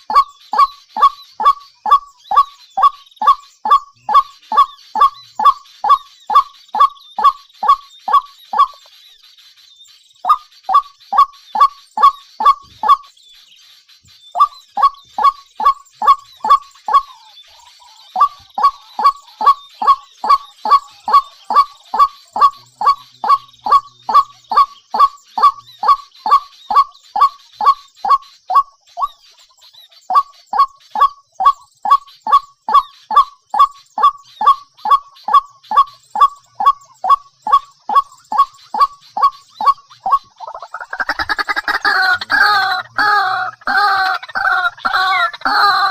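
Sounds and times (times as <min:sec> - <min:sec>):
bird honking calls: 0:00.0 - 0:08.8, 0:10.2 - 0:13.1, 0:14.4 - 0:29.2, 0:30.1 - 0:45.9.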